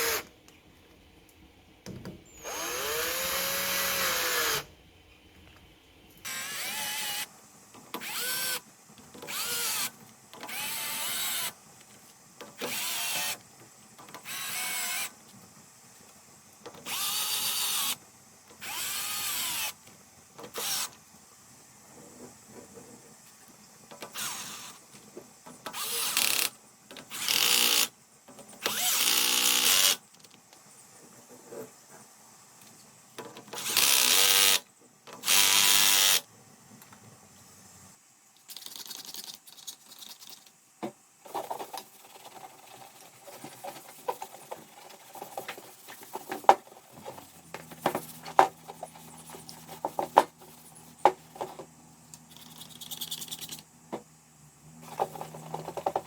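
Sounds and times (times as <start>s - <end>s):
small electric power tool: 0.0s - 0.3s, 2.3s - 4.7s, 6.2s - 7.3s, 7.9s - 8.6s, 9.2s - 11.6s, 12.6s - 13.4s, 14.1s - 15.2s, 16.8s - 18.0s, 18.6s - 19.8s, 20.4s - 21.0s, 24.0s - 24.8s, 25.7s - 27.9s, 28.6s - 30.0s, 33.5s - 34.6s, 35.2s - 36.3s
low steady hum: 41.0s - 56.0s
small parts clicking and tapping: 51.1s - 53.7s.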